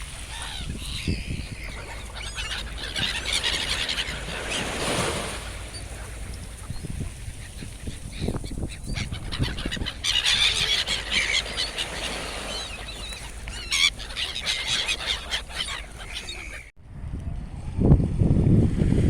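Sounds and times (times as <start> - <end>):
gulls crying: 0.0 - 16.7.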